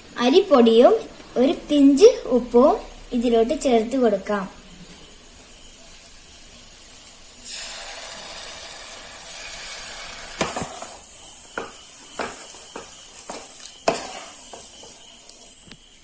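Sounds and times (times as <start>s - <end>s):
thick mixture sizzling in a pan: 0.0s - 16.0s
spoon scraping a pan: 11.6s - 15.6s.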